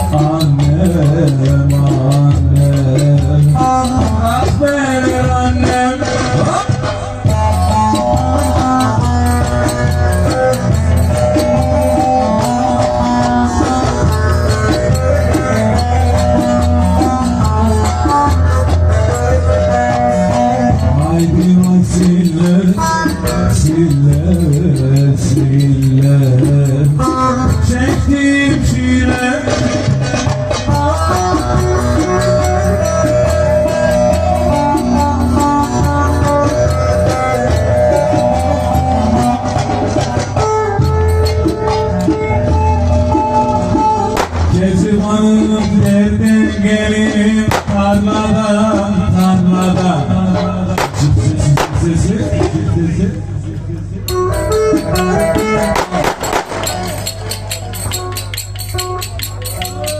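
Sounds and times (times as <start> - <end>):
plucked strings: 0.0 - 53.0, 54.0 - 59.9
steady bass line: 0.0 - 59.9
light percussion clicks: 54.1 - 59.9
wooden spoons clacking: 54.1 - 59.9.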